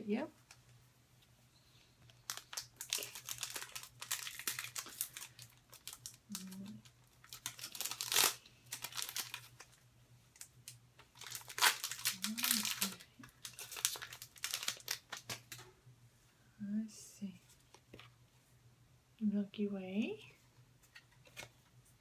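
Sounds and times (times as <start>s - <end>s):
plastic wrapper tearing and crinkling: 2.1s - 15.6s.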